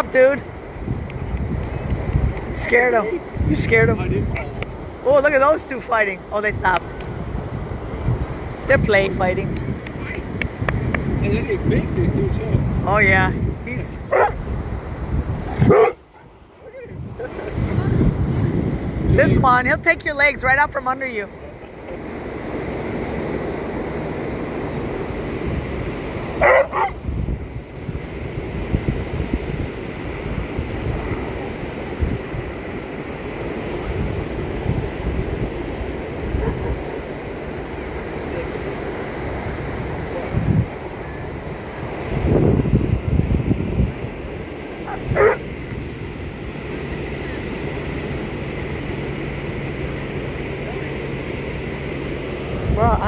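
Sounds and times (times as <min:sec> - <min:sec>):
surf: 0:00.0 - 0:53.0
wind gusts on microphone: 0:00.0 - 0:53.0
dog barking: 0:14.1 - 0:14.4, 0:15.5 - 0:16.3, 0:26.4 - 0:27.0, 0:36.4 - 0:36.9, 0:44.9 - 0:45.4.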